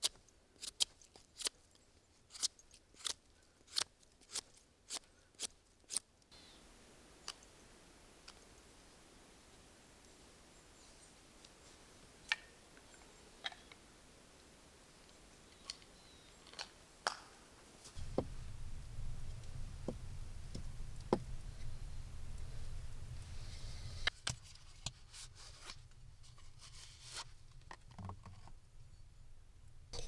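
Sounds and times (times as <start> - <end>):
small clicks and light scraping: 15.0 - 18.4
low steady hum: 18.0 - 24.1.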